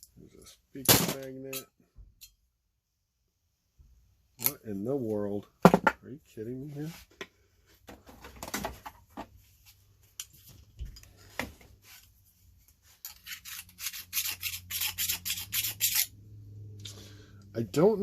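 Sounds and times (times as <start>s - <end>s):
hand file rasping on metal: 13.1s - 16.1s.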